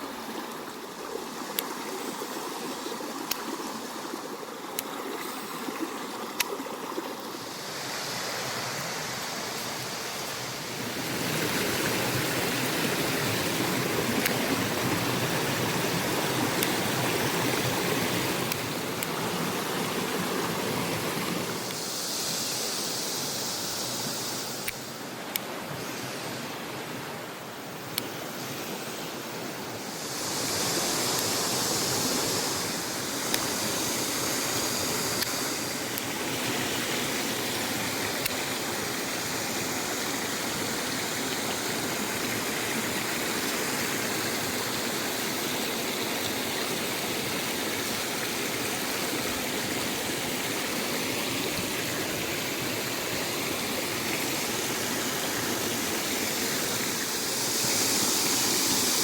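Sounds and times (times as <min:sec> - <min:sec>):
water rushing over rocks: 0:00.0 - 0:59.0.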